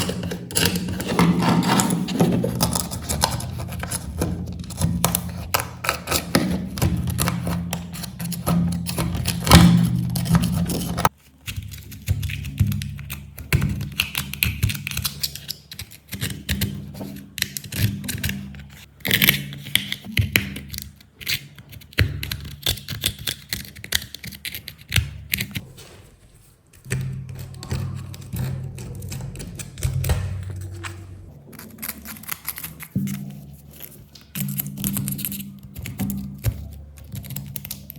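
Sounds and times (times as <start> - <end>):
small tools tapping and clicking: 0.0 - 25.6, 31.6 - 37.9.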